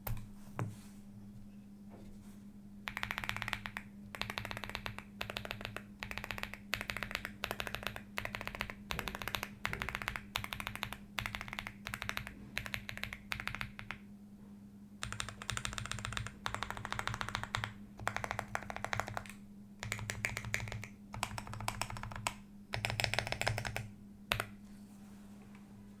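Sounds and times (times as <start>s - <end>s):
faint low hum: 0.0s - 26.0s
typing on mechanical keyboard: 2.9s - 14.0s, 15.0s - 24.6s.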